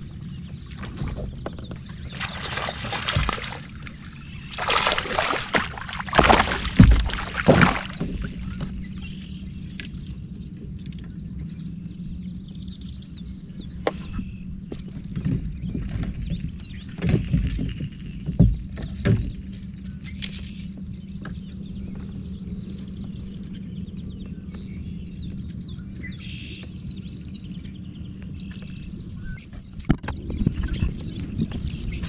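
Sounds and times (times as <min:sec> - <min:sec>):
sharp knocks: 0:02.0 - 0:08.4.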